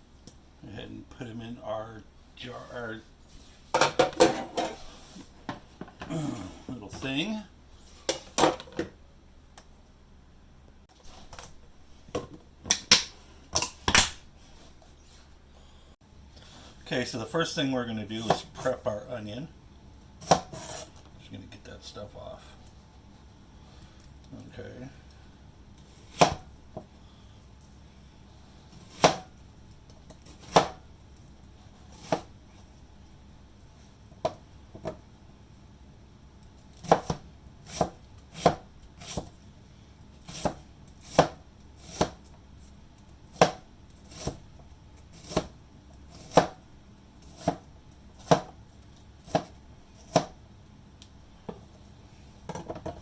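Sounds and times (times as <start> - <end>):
knife chopping onion on board: 20.2 - 20.9, 26.0 - 26.9, 28.8 - 29.3, 30.2 - 30.8, 32.0 - 32.3, 36.8 - 39.3, 40.3 - 42.3, 43.3 - 44.4, 45.2 - 46.6, 47.2 - 48.6, 49.2 - 50.4.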